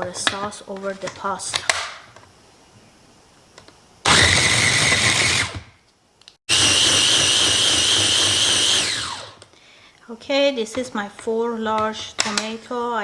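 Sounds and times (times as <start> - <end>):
food processor motor whine: 4.0 - 5.8, 6.5 - 9.5.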